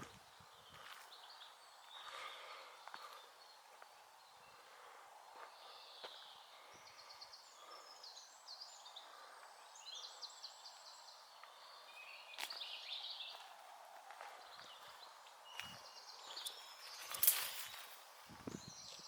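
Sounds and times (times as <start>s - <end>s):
small songbird singing: 5.5s - 13.4s, 14.4s - 19.0s.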